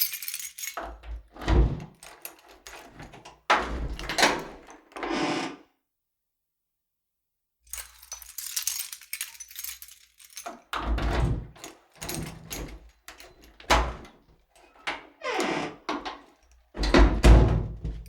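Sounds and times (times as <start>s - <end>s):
keys jangling in a door lock: 0.0s - 4.9s, 7.7s - 15.1s, 16.1s - 17.1s
door rattling and thudding: 7.8s - 14.0s, 16.8s - 18.0s.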